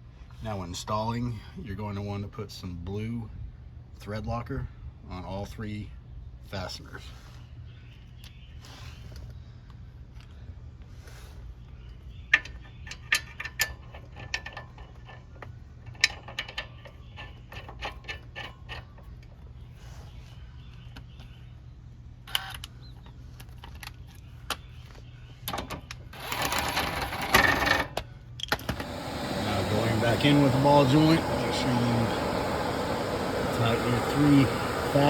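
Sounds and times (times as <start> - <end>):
tools and metal parts clinking: 12.3 - 19.1.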